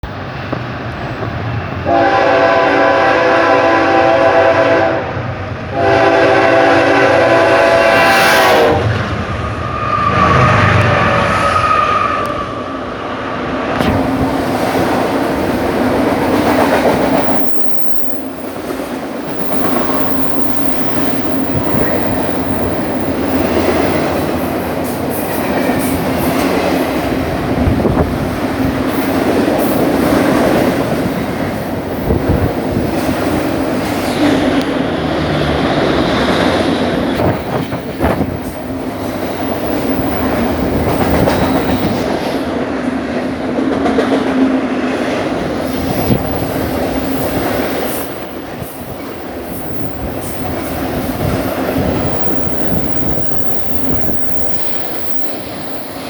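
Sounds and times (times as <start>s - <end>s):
train wheels rumbling on rails: 0.0s - 56.0s
locomotive air horn blasts: 1.9s - 9.0s.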